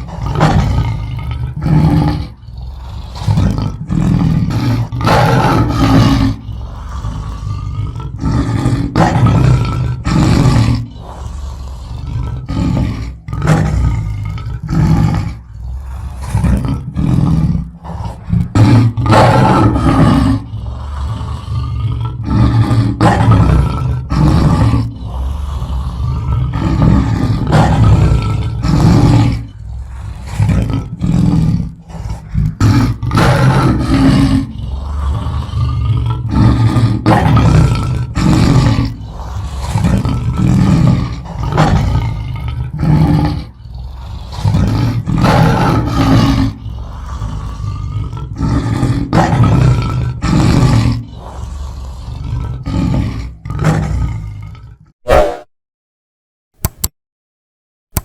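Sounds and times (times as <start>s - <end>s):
lion roaring: 0.0s - 55.5s.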